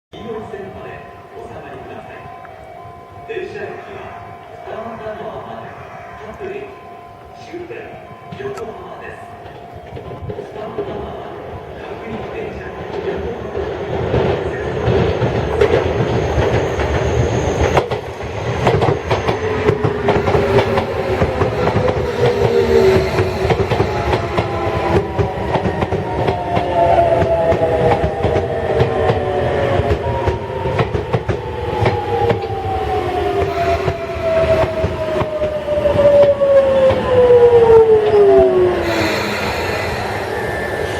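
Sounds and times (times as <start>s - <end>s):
electric train motors whining: 13.5s - 40.9s.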